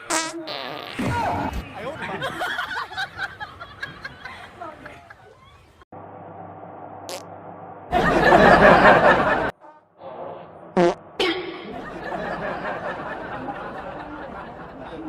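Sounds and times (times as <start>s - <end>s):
fart sound effect: 0.0s - 1.6s, 7.1s - 7.4s, 10.7s - 11.7s
people talking: 1.0s - 3.1s, 4.2s - 5.5s, 11.2s - 15.0s
people laughing: 1.1s - 5.6s, 7.9s - 9.6s, 11.6s - 15.0s.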